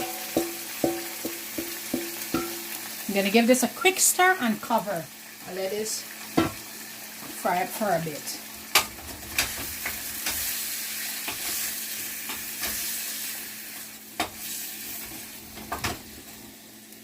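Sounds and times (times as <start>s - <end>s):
spoon knocking against pot: 0.0s - 2.7s
chicken sizzling in oil: 0.0s - 17.0s.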